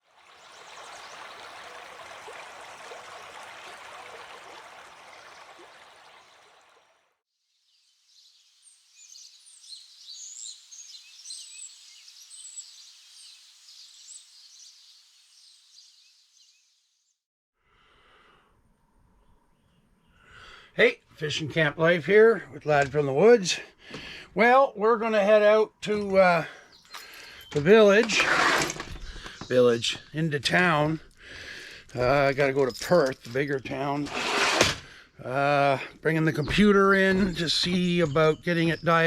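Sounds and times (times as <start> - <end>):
rushing water: 0.0 - 7.2.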